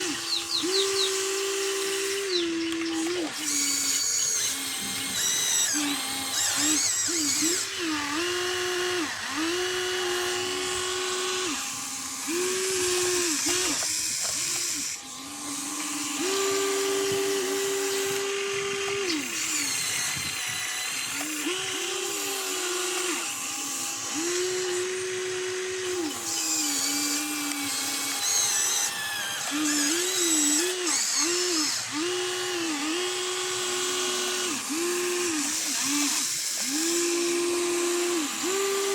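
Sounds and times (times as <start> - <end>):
small electric motors whining: 0.0 - 38.9.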